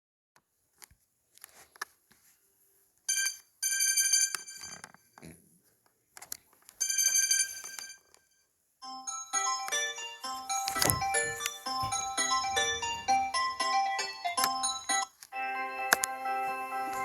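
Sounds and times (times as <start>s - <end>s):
chiming ringtone: 3.1s - 5.0s, 6.8s - 8.1s, 8.8s - 17.0s
handling clicks and taps: 10.4s - 15.3s.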